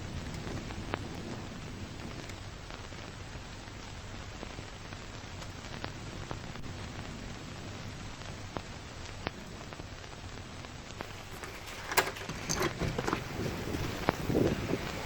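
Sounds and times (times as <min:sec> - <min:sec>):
rain hiss: 0:00.0 - 0:15.0
sharp ticks and crackles: 0:00.0 - 0:15.0.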